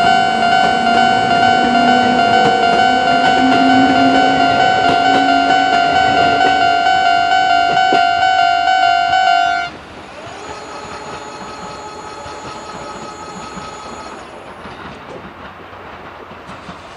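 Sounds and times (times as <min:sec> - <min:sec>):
train wheels clattering on rails: 0:00.0 - 0:08.3, 0:09.7 - 0:16.9
level crossing bell dinging: 0:00.0 - 0:09.7.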